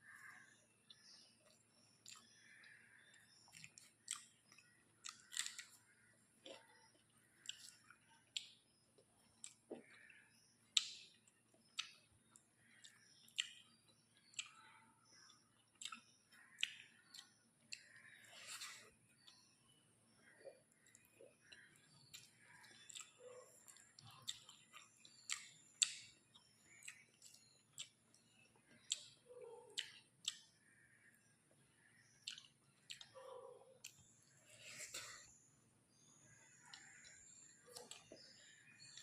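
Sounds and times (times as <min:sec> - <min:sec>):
person chewing food: 0:00.0 - 0:19.6, 0:20.7 - 0:30.6, 0:32.1 - 0:33.2, 0:36.0 - 0:39.0
lip smacks and mouth clicks: 0:21.5 - 0:26.1, 0:29.7 - 0:30.5, 0:32.2 - 0:33.1.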